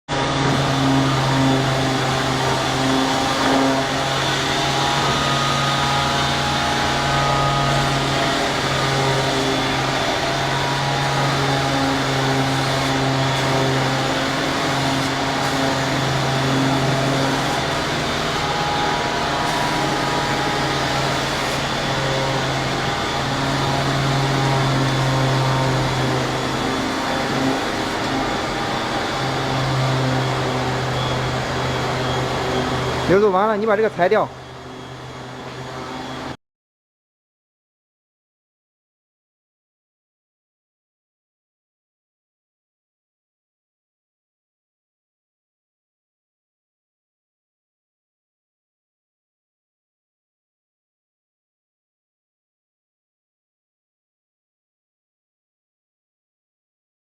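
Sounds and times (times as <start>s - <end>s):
machine humming and whirring: 0.1s - 36.4s.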